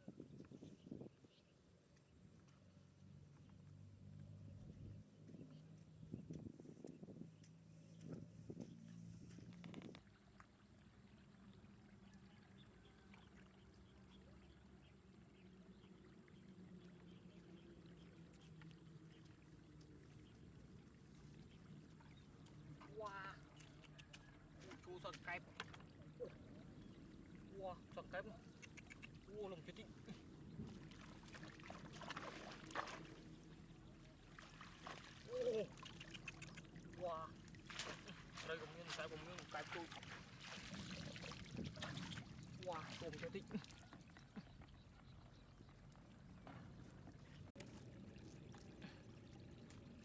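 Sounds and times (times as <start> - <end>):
water trickling and splashing: 7.1 - 50.0
faint ticks: 28.4 - 29.3, 35.8 - 36.8.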